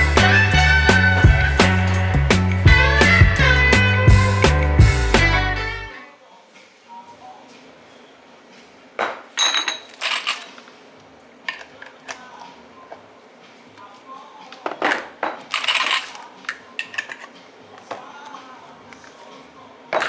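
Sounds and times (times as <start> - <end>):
metal kitchenware clattering: 9.4 - 10.8, 14.9 - 17.4.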